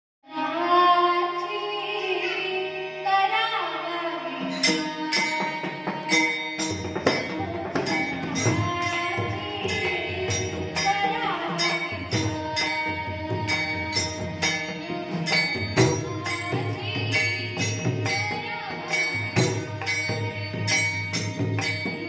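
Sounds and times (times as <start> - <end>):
hand cymbals striking: 4.4 - 22.0.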